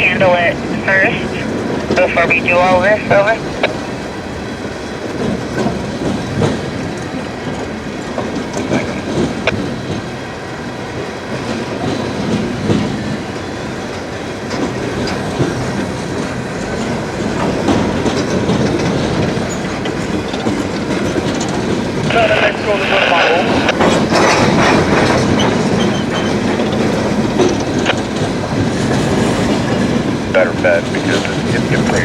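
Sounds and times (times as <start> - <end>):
train cars rumbling past: 0.0 - 32.0
wheels clicking over rail: 11.3 - 22.2, 23.0 - 32.0.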